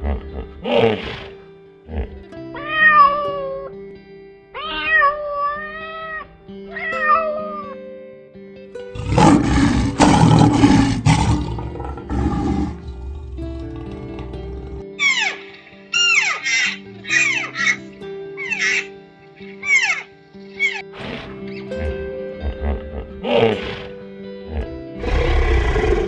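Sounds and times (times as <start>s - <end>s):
light musical backing: 0.0s - 26.0s
cat meowing: 2.6s - 3.7s, 4.6s - 7.8s, 15.0s - 15.4s, 16.0s - 17.8s, 18.4s - 18.9s, 19.6s - 20.8s
rough tiger roar: 9.0s - 14.9s, 24.5s - 26.0s.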